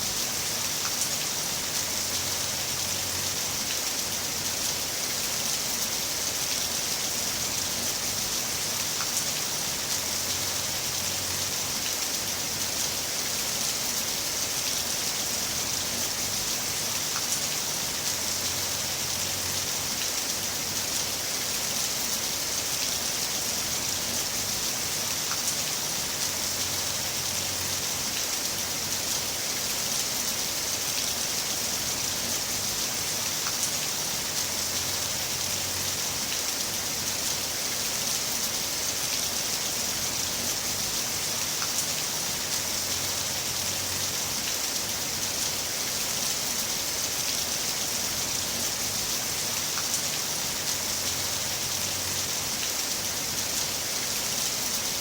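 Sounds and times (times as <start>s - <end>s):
heavy rain falling: 0.0s - 55.0s.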